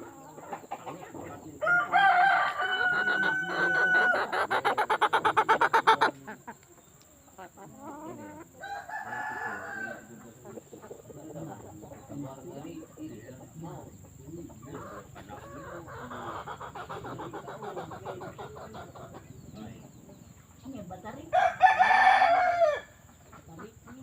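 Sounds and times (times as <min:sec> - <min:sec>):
rooster crowing: 0:01.6 - 0:04.4, 0:08.6 - 0:10.2, 0:21.3 - 0:23.0.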